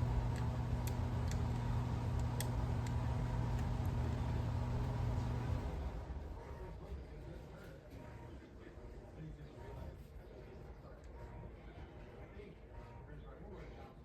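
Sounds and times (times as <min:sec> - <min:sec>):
steady mechanical hum: 0:00.0 - 0:14.0
light clicks: 0:00.3 - 0:04.0.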